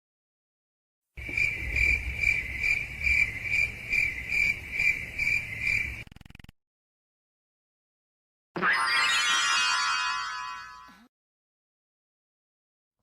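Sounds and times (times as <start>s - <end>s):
crickets chirping: 1.2s - 6.0s.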